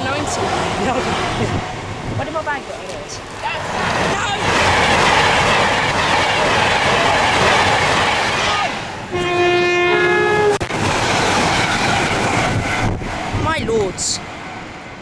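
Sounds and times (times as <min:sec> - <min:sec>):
train passing rumble: 0:00.0 - 0:15.0
train horn: 0:08.3 - 0:10.7.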